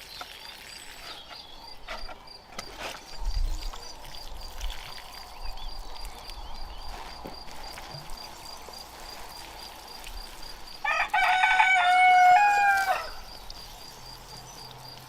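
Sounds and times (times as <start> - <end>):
rooster crowing: 10.8 - 13.3.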